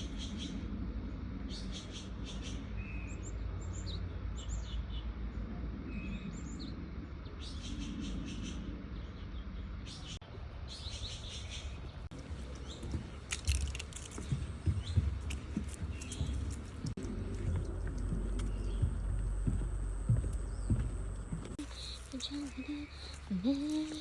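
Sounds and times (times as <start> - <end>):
birds chirping: 5.9 - 24.0
low steady rumble: 12.1 - 24.0.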